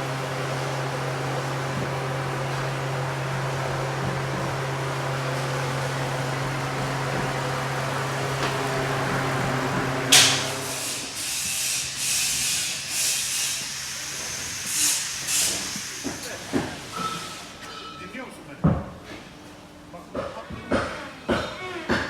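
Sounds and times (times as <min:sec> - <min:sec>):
machine hum: 0:00.0 - 0:12.6
air hissing bursts: 0:08.6 - 0:17.6.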